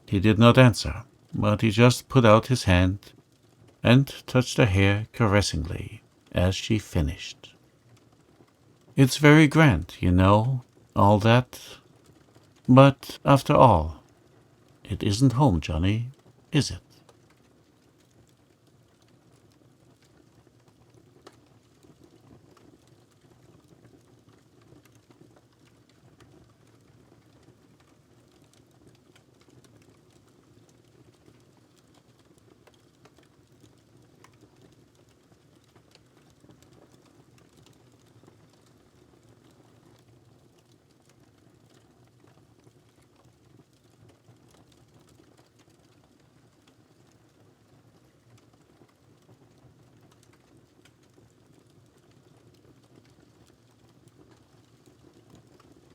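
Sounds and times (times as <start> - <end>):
faint wood fire crackling: 3.0 - 3.8, 7.3 - 9.0, 14.0 - 14.8, 16.1 - 55.9.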